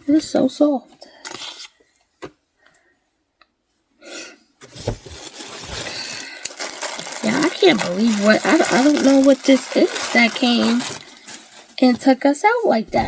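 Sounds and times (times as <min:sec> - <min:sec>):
fabric and packaging rustling: 0:04.6 - 0:13.0.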